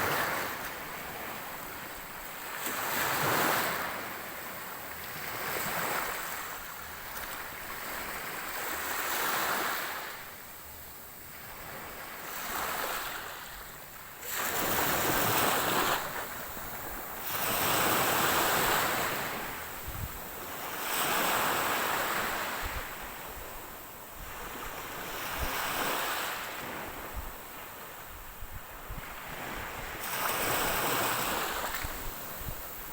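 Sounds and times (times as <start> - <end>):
ocean waves breaking on shore: 0.0 - 10.4, 11.4 - 32.9
wind rumble on microphone: 14.6 - 21.1, 22.2 - 32.9.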